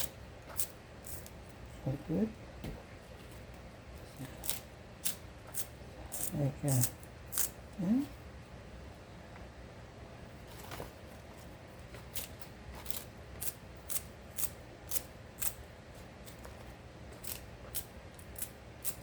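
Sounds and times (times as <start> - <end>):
knife cutting leafy greens: 0.0 - 1.4, 4.2 - 7.6, 12.0 - 15.6, 17.2 - 19.0.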